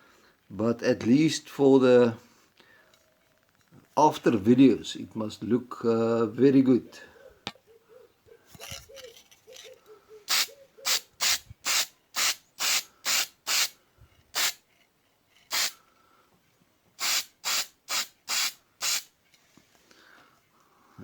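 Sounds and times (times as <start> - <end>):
spray paint can hissing bursts: 10.3 - 14.6, 15.5 - 15.8, 17.0 - 19.1.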